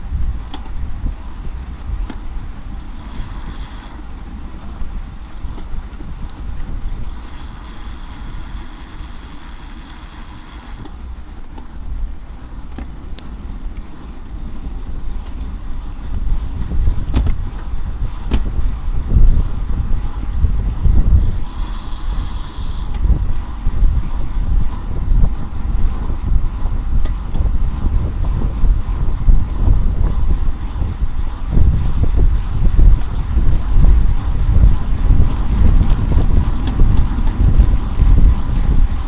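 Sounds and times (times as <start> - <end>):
wind buffeting microphone: 0.0 - 39.0
high thin buzz: 2.6 - 4.1, 7.0 - 11.3, 21.2 - 23.0.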